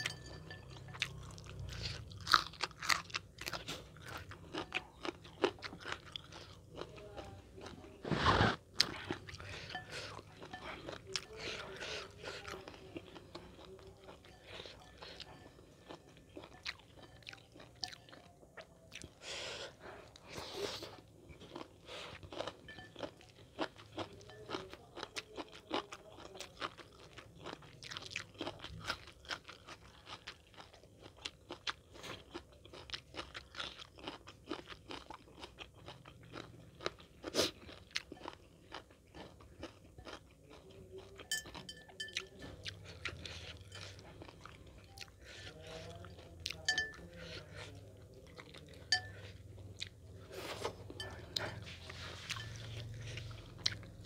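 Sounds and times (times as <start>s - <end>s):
crunching and chewing food: 0.0s - 54.0s.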